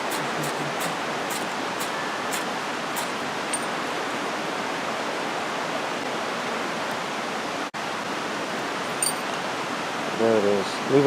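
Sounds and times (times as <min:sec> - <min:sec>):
creek water rushing: 0:00.0 - 0:11.0.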